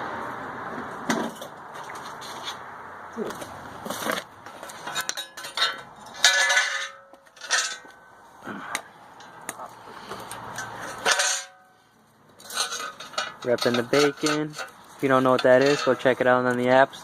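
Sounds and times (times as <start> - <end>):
metal objects clanking: 4.5 - 8.0, 10.5 - 11.8, 12.4 - 16.4.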